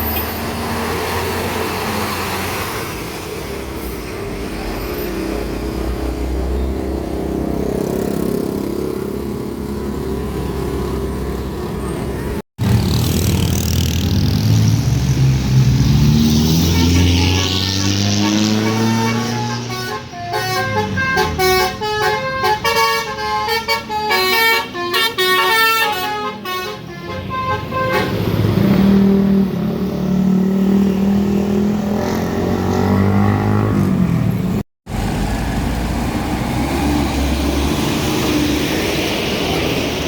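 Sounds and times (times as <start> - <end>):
diesel truck engine: 0.0 - 40.0
road noise: 0.0 - 40.0
musical truck horn: 16.6 - 28.3.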